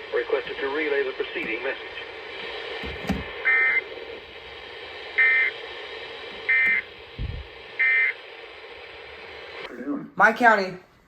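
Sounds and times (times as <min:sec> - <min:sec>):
harsh digital tone bursts: 0:07.8 - 0:08.2.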